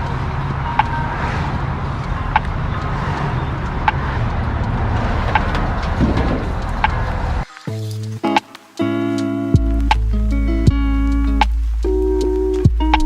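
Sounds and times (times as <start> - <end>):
vehicle engine rumbling: 0.0 - 7.5.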